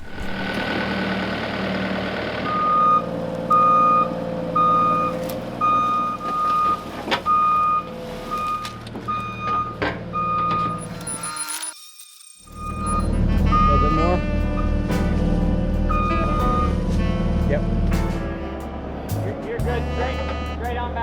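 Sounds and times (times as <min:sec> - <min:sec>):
engine running: 0:00.0 - 0:11.6, 0:12.3 - 0:21.0
vehicle back-up alarm beeping: 0:02.4 - 0:17.0.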